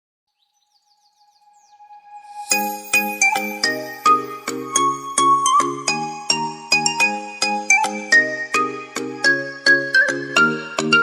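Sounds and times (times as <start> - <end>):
chiming background music: 1.5 - 7.6.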